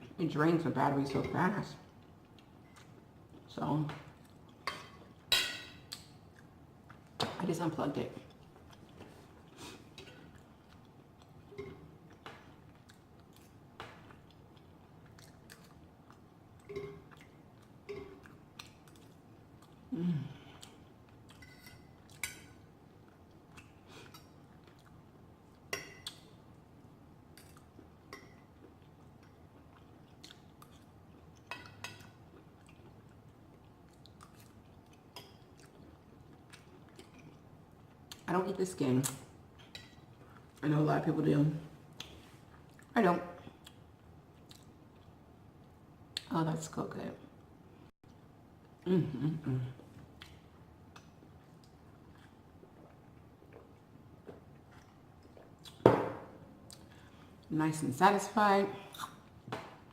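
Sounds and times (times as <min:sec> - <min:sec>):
person chewing food: 0:05.9 - 0:07.2, 0:08.3 - 0:38.2, 0:41.9 - 0:42.9, 0:43.5 - 0:46.3, 0:49.8 - 0:55.9, 0:58.9 - 0:59.9.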